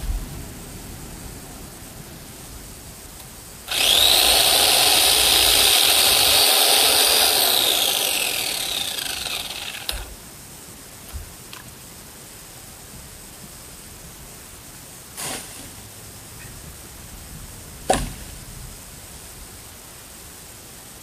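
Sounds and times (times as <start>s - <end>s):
chainsaw stopping click: 3.7s - 10.1s
electric chainsaw whining: 3.7s - 10.1s.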